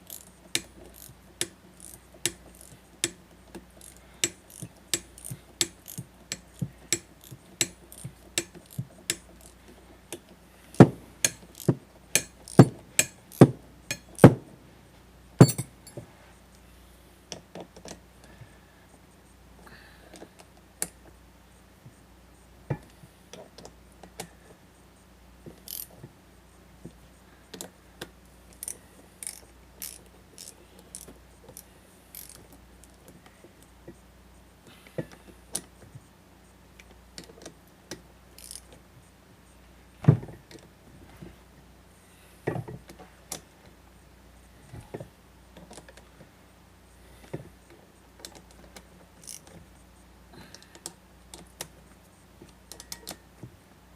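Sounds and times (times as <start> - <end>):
metal tools clinking: 15.4 - 16.0.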